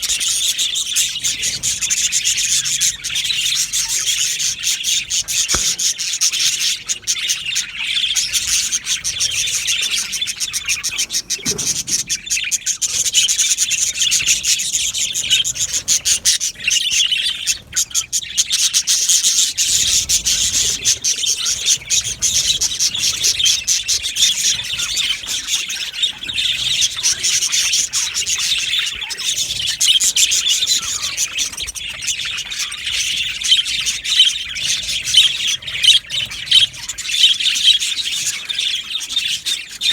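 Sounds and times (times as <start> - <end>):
budgerigars chirping and chattering: 0.0 - 39.9.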